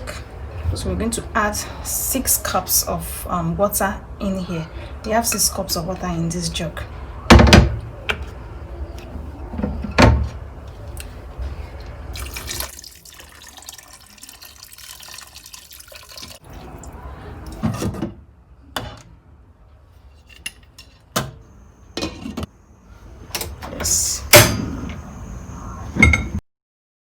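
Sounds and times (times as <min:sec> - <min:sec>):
water pouring into a pot: 0:12.1 - 0:17.0.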